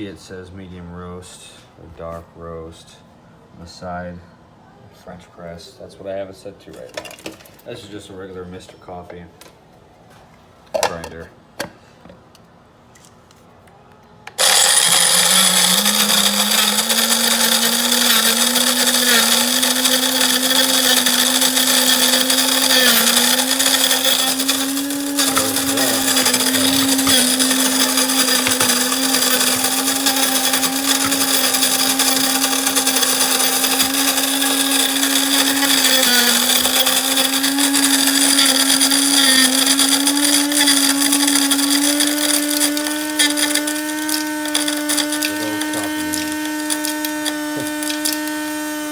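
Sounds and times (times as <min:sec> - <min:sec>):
coffee grinder whine: 0:14.3 - 0:48.9
beans rattling: 0:14.4 - 0:48.8.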